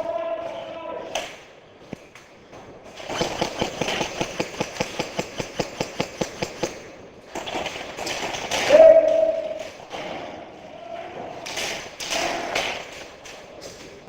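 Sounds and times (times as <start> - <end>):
airsoft gun rapid fire: 3.0 - 8.7.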